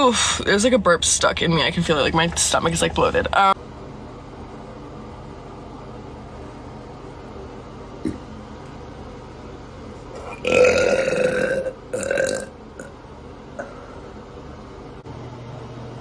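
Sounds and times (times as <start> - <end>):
woman burping: 10.2 - 12.9.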